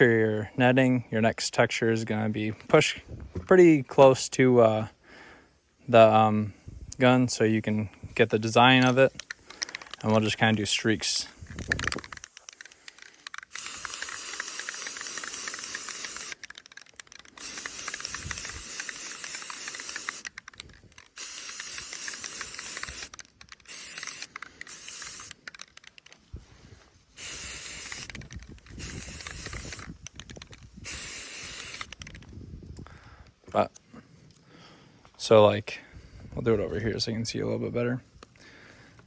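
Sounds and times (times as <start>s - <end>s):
spray paint can spraying: 11.4s - 32.4s.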